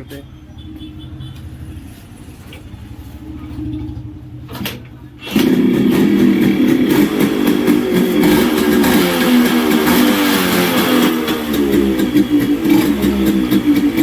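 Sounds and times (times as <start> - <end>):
two-stroke engine idling: 5.0 - 14.0.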